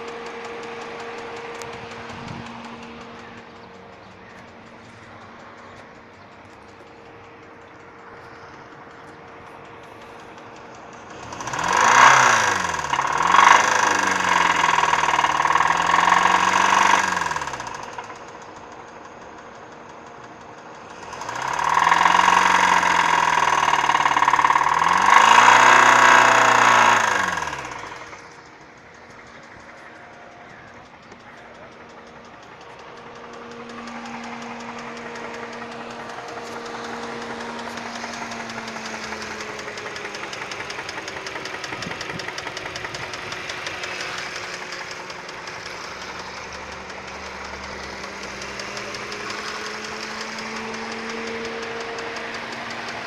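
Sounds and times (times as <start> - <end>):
car engine revving: 0.0 - 53.0
engine clicking: 0.0 - 53.0.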